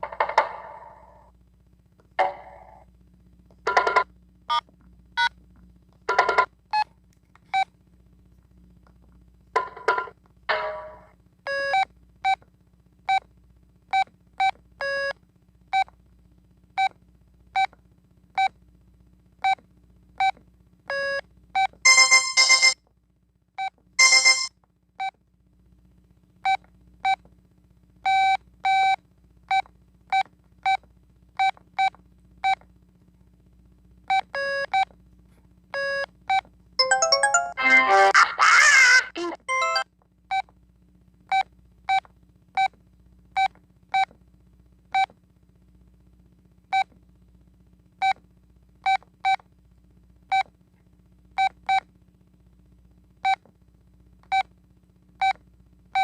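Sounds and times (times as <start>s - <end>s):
beeping phone ringtone: 21.9s - 22.8s, 24.0s - 24.5s, 36.8s - 38.2s, 39.5s - 39.8s.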